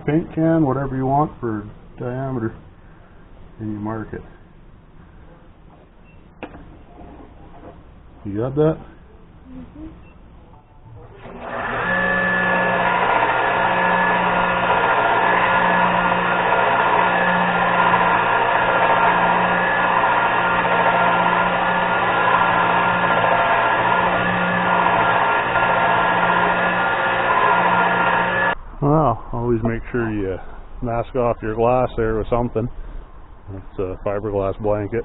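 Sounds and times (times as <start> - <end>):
angle grinder cutting steel: 11.1 - 28.6.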